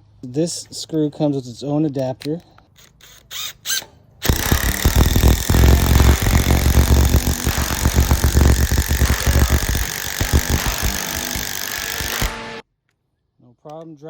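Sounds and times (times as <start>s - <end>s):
impact wrench hammering screw: 4.2s - 12.6s.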